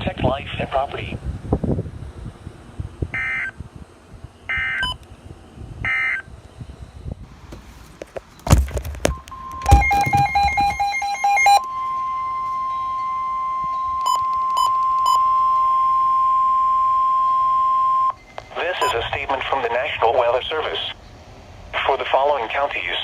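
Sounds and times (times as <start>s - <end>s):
rapid beeping: 8.6s - 15.3s, 18.5s - 19.8s
warbling data tones: 9.1s - 11.6s.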